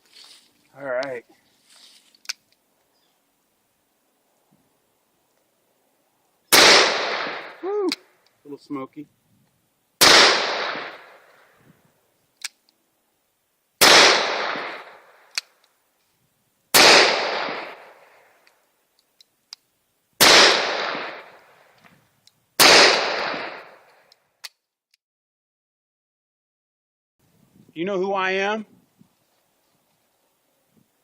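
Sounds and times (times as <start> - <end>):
gunshots with echo: 6.5 - 7.6, 10.0 - 11.2, 13.8 - 15.0, 16.8 - 18.0, 20.2 - 21.3, 22.6 - 23.8.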